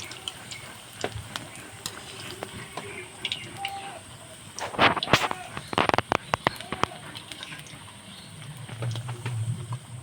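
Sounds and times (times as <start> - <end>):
food sizzling in hot oil: 0.0 - 10.0
oil popping and crackling: 0.0 - 10.0.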